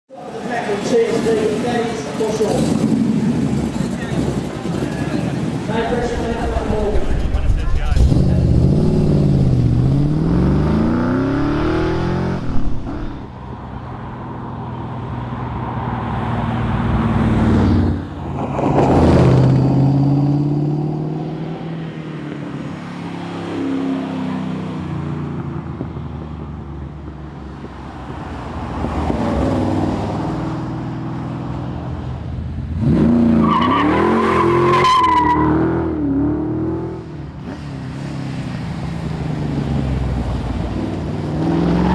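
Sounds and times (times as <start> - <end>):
car engine revving: 2.4 - 13.3.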